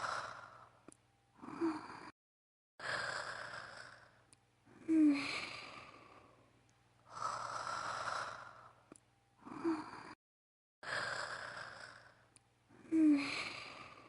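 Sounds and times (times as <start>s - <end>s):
woman acting snoring: 1.4s - 2.2s, 9.4s - 10.2s.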